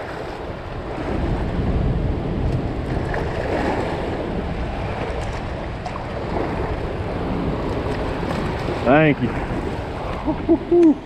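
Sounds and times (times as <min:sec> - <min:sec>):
water rushing through spillway: 0:06.8 - 0:10.3.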